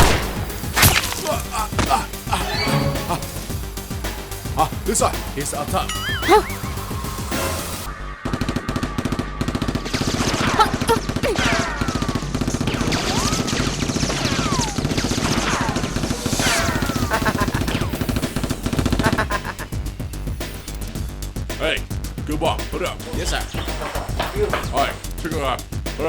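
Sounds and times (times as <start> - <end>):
falling whistling tones: 2.4 - 3.6.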